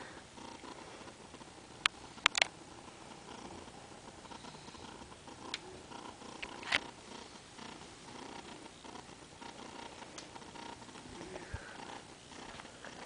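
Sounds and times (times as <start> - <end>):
person snoring softly: 0.0 - 1.4, 2.9 - 13.0
sharp clicks: 1.8 - 2.6, 5.4 - 5.7, 8.9 - 11.1.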